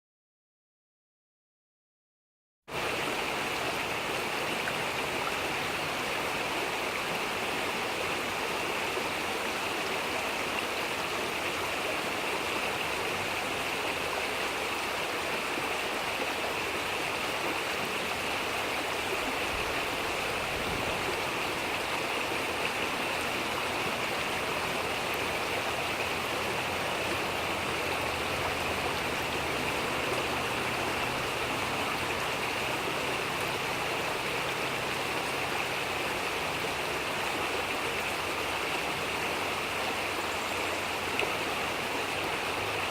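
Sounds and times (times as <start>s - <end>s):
brook babbling over stones: 2.7s - 42.9s.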